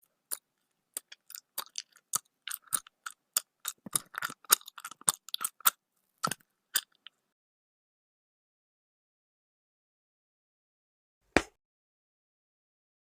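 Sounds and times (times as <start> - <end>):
irregular clicks and crunches: 0.1 - 7.2.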